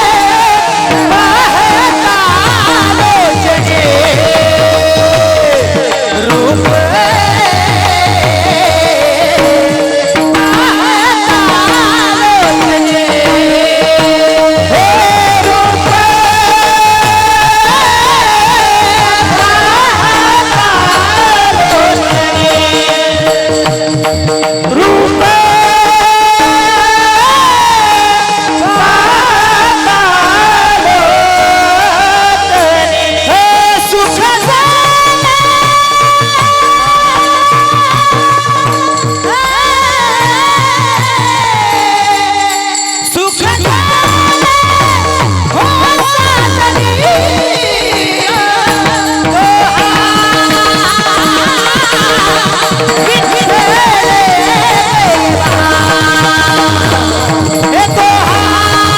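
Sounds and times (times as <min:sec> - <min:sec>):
drum strokes: 0:00.0 - 0:58.9
instrumental accompaniment: 0:00.0 - 0:58.9
solo voice singing: 0:00.0 - 0:58.9.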